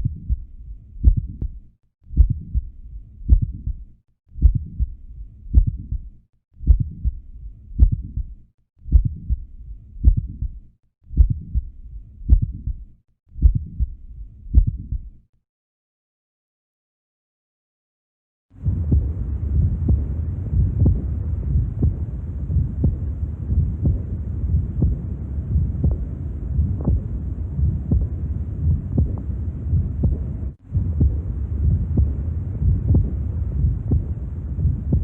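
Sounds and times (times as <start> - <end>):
heartbeat through stethoscope: 0.0 - 15.2, 18.6 - 35.0
low rushing noise: 18.6 - 35.0.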